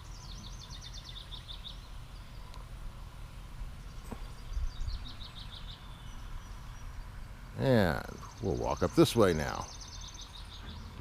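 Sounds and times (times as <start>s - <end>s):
songbird singing high notes: 3.8s - 11.0s.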